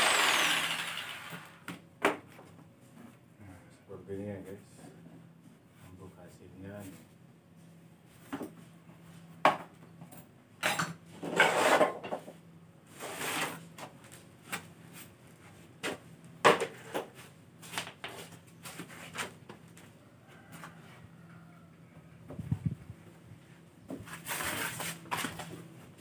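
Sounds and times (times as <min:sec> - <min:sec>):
scraping or rubbing: 0:12.9 - 0:13.7, 0:24.0 - 0:25.5.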